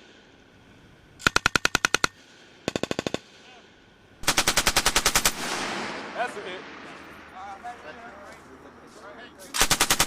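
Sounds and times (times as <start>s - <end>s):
machine gun bursts: 4.2s - 5.6s, 9.5s - 10.0s
rolling echo: 5.2s - 8.9s.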